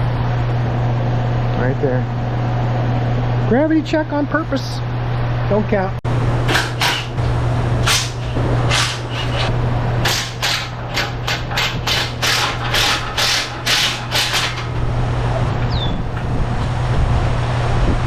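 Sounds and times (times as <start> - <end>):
steady low hum: 0.0 - 18.0
sharp metallic tool strokes: 7.9 - 14.6
falling squeak: 15.6 - 16.1.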